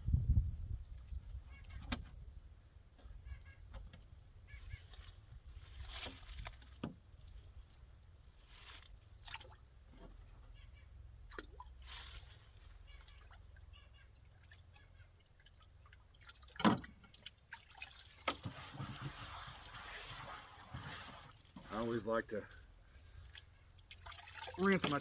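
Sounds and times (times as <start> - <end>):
faint bird calls: 3.0 - 5.1, 12.4 - 15.3.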